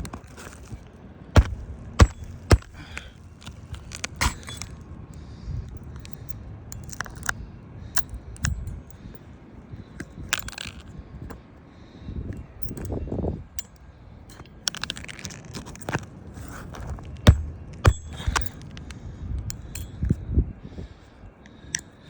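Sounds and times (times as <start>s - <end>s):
shingles scraping and rustling: 0.0s - 4.8s, 14.7s - 18.8s
metal clicks and clinks: 5.7s - 9.3s, 12.4s - 13.0s, 17.2s - 20.2s.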